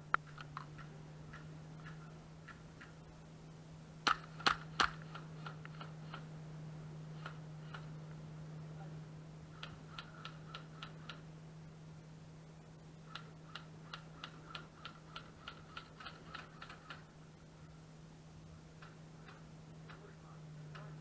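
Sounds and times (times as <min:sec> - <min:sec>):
airsoft rifle firing sharp clicks: 0:04.0 - 0:06.2.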